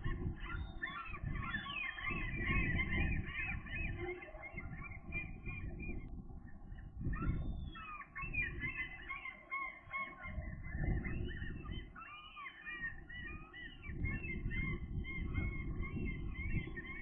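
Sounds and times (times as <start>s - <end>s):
wind rumble: 0.0s - 9.0s, 10.2s - 12.0s, 12.8s - 17.0s
gulls calling: 0.0s - 17.0s.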